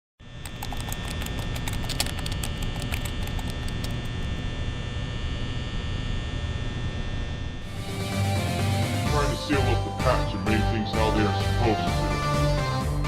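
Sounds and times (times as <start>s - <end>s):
crackling clicks: 0.4s - 4.3s.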